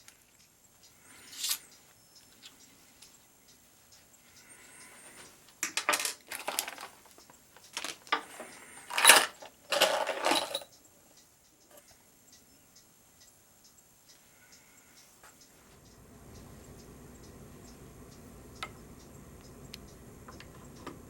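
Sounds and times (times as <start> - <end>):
small metal parts clinking: 1.3 - 1.6, 5.6 - 10.7.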